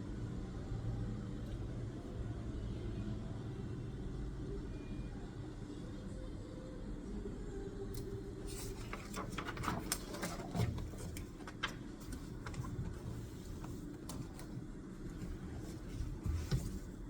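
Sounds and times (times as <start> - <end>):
steady low hum: 5.4 - 17.0
light clicks and scratches: 8.0 - 17.0.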